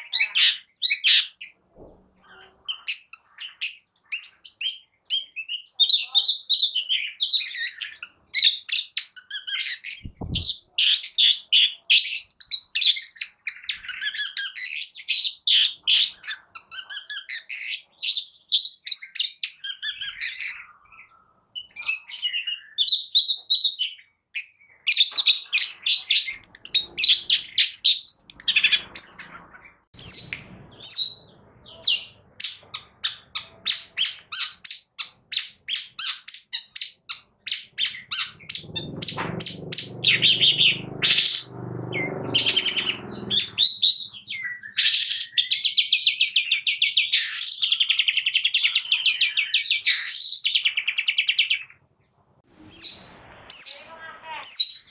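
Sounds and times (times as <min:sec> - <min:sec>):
bird singing chattering song: 0:00.0 - 0:01.6, 0:02.2 - 0:51.8, 0:52.7 - 0:54.9
short low thump: 0:10.0 - 0:10.5.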